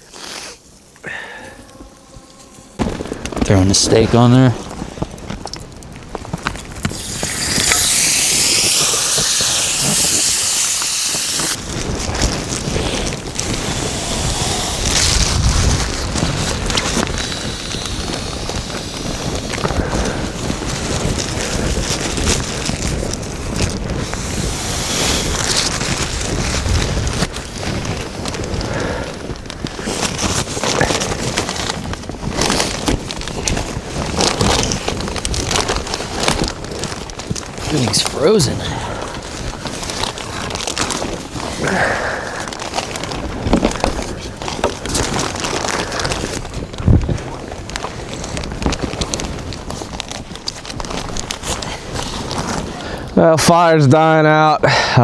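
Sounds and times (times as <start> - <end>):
crunching and clicking noises: 0.0 - 55.0
wind buffeting microphone: 0.7 - 53.2
low rough rushing noise: 1.1 - 4.8
steak sizzling: 6.8 - 11.7, 13.4 - 15.5.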